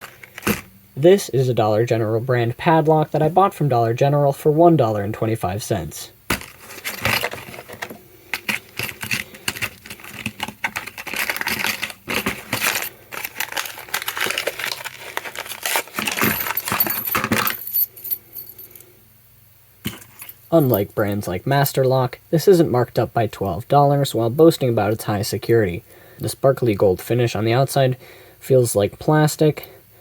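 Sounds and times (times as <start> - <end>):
padlock and keys jangling: 8.4 - 13.4, 16.1 - 18.9.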